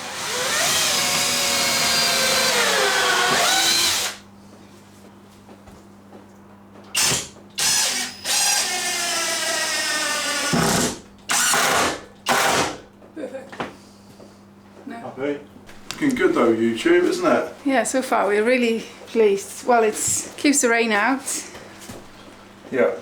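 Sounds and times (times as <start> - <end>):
power drill driving screws: 0.0 - 4.2, 7.0 - 12.8.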